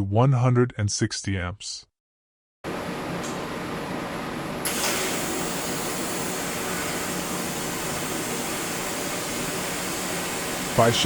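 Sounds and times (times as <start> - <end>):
welding arc hissing: 4.7 - 11.0.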